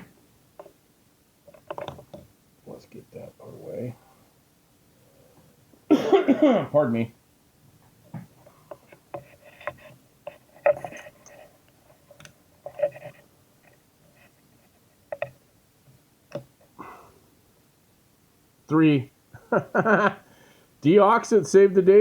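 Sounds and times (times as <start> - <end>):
tools handled on workbench: 1.5 - 2.2, 8.2 - 14.3.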